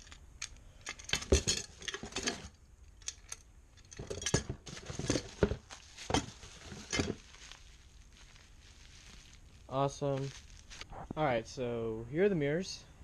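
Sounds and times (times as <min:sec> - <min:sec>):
hard parts clicking and clattering: 0:00.0 - 0:07.6.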